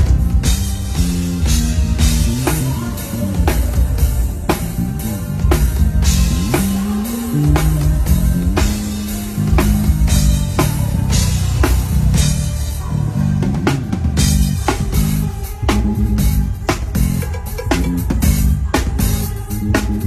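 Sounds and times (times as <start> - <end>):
band track: 0.0 - 20.0
bass line: 0.0 - 20.0.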